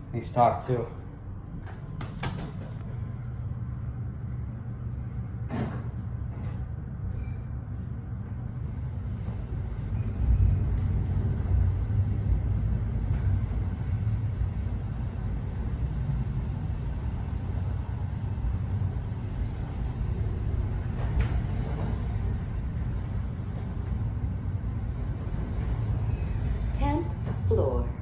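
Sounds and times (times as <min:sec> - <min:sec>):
elevator car rumbling: 0:00.0 - 0:28.0.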